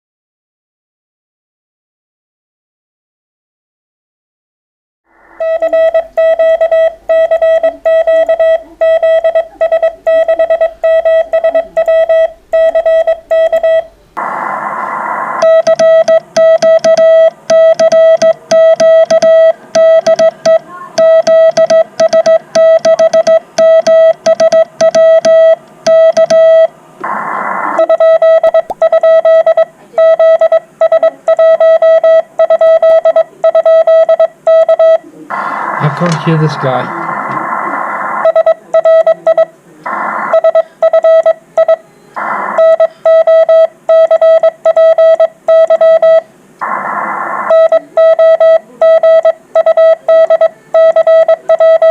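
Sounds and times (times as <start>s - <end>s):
morse code tone: 5.4s - 14.1s, 15.4s - 26.7s, 27.8s - 35.0s, 42.6s - 46.2s, 47.5s - 51.9s
radio hiss: 13.9s - 16.4s, 27.0s - 28.9s, 35.1s - 38.6s.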